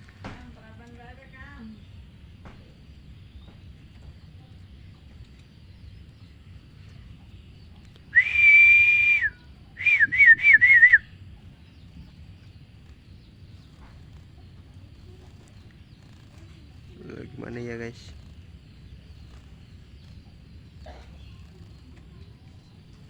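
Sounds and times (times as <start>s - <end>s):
bird whistling: 8.1s - 11.2s.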